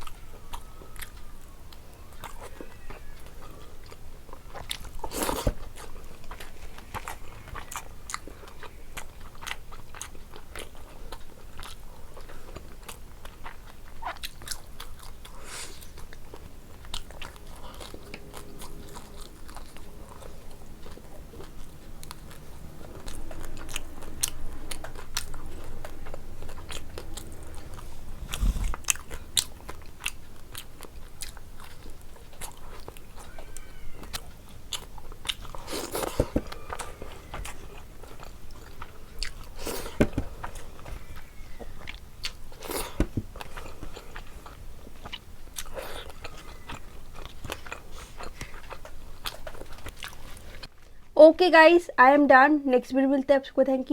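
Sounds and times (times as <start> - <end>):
chewing and crunching food: 0.0 - 51.2.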